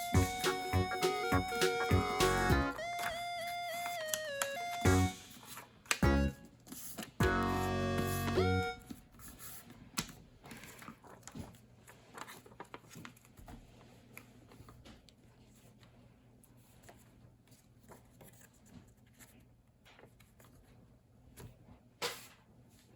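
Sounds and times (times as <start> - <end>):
paper rustling: 10.5 - 14.8.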